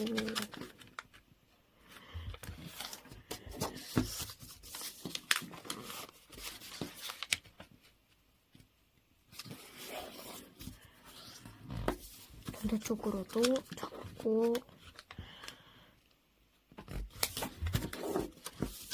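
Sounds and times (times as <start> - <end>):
paper crinkling and rustling: 0.0 - 1.3, 2.2 - 8.0, 9.3 - 15.5, 16.8 - 18.9.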